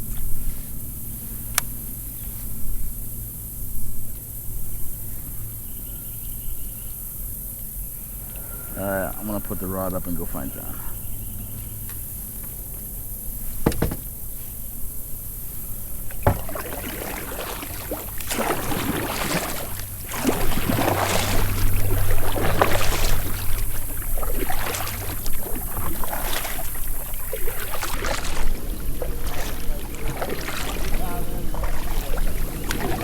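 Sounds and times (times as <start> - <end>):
sharp knocks: 13.6 - 14.1, 16.1 - 16.7
paddle splashing through water: 15.5 - 33.0.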